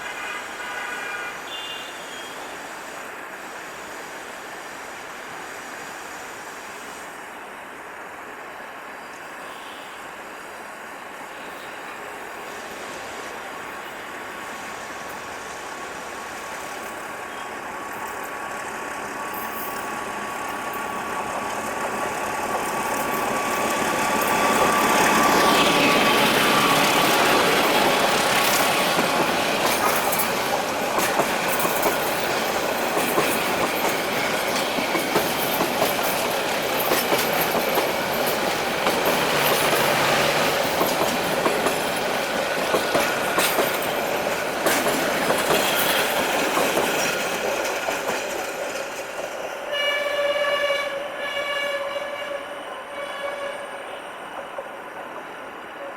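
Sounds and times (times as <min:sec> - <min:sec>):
diesel locomotive passing: 0:00.0 - 0:55.9
wheels clacking over rail joints: 0:16.0 - 0:49.9.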